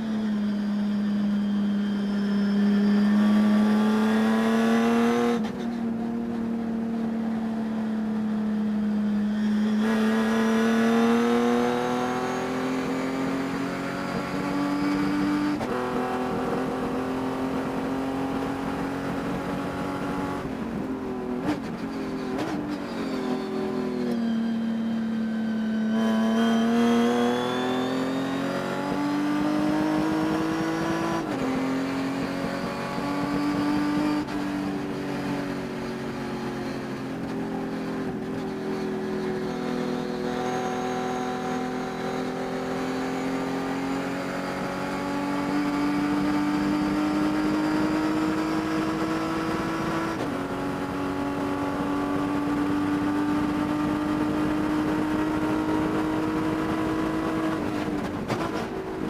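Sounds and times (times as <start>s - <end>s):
race car engine revving: 25.9s - 37.4s, 38.0s - 59.0s.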